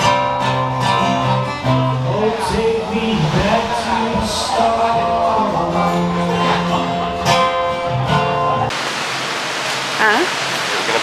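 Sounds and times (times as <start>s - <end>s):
acoustic guitar music: 0.0s - 8.7s
steady background hiss: 8.7s - 11.0s.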